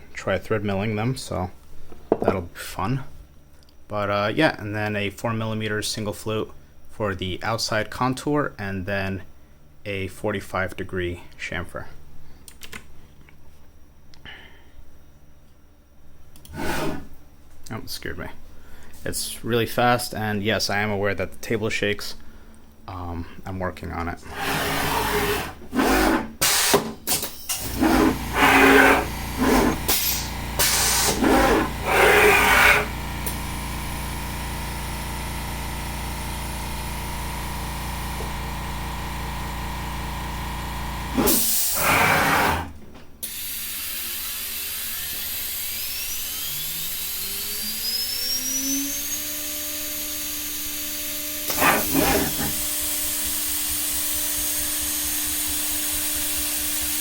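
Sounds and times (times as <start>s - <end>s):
spindle short loud bursts: 27.5s - 33.0s, 51.5s - 52.6s
cnc router spindle hum: 27.6s - 42.7s, 44.2s - 57.0s.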